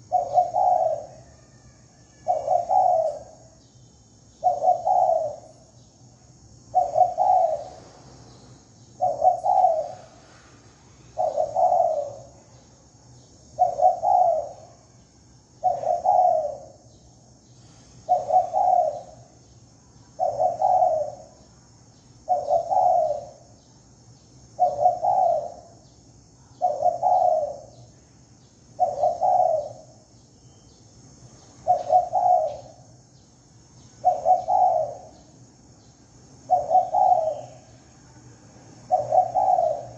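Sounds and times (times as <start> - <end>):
dove cooing: 0.0 - 1.5, 2.1 - 3.5, 4.4 - 5.7, 6.7 - 7.9, 9.0 - 10.2, 11.2 - 12.4, 13.6 - 14.8, 15.6 - 16.8, 18.0 - 19.3, 20.2 - 21.4, 22.3 - 23.5, 24.6 - 25.8, 26.6 - 27.8, 28.8 - 30.0, 31.6 - 32.9, 34.0 - 35.2, 36.5 - 37.7, 38.9 - 39.9.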